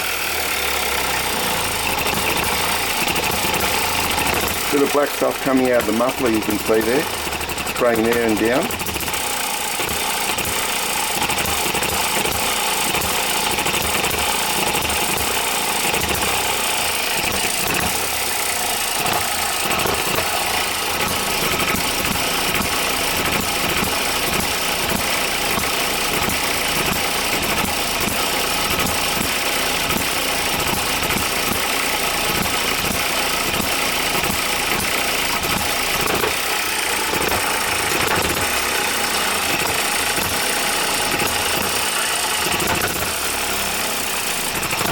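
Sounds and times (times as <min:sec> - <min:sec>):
small engine running: 0:00.0 - 0:44.9.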